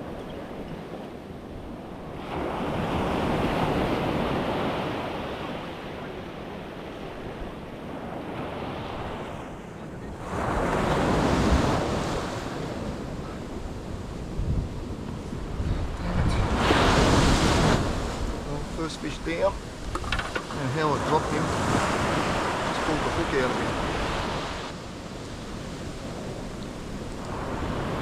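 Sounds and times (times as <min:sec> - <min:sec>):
waves crashing on beach: 0:00.0 - 0:28.0
wind buffeting microphone: 0:00.0 - 0:28.0.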